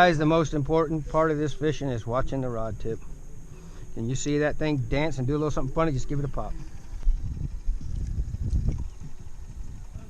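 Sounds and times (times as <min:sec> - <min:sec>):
wind buffeting microphone: 0:04.6 - 0:10.0.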